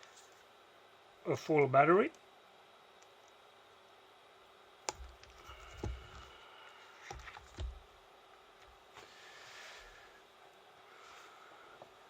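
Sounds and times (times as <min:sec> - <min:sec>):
small objects knocking and clicking: 0:04.9 - 0:06.3, 0:07.1 - 0:07.9.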